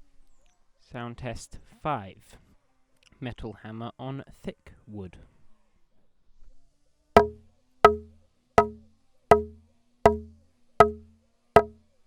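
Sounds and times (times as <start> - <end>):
metal hammer striking wood: 7.2 - 11.8.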